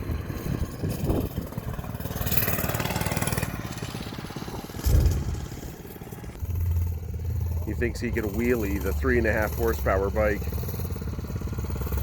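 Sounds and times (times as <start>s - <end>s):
small engine revving: 0.0s - 12.0s
loud low thump: 4.8s - 5.6s.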